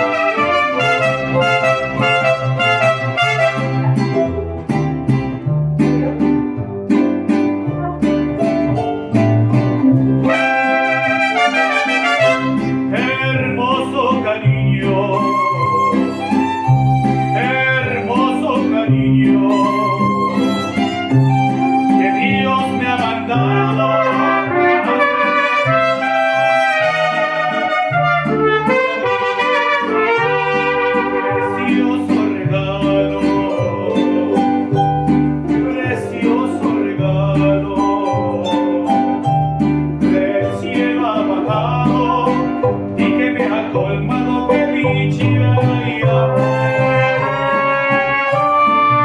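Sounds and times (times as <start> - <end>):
trumpets playing melody: 0.0 - 4.4, 7.7 - 8.4, 10.2 - 12.9, 23.4 - 32.0, 46.3 - 49.0
plucked bass line: 0.0 - 11.3, 12.2 - 24.8, 30.2 - 49.0
mariachi band playing: 0.0 - 49.0
strummed guitars: 0.0 - 49.0.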